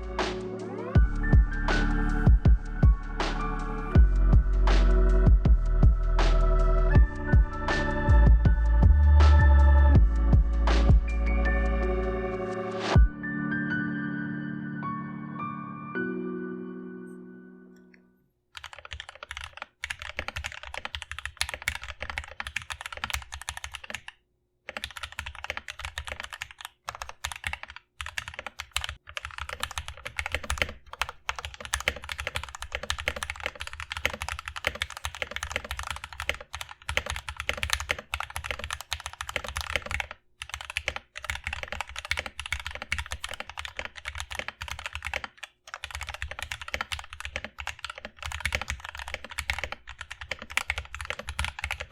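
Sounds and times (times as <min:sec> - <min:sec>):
mechanical keyboard typing: 0:18.6 - 0:51.9.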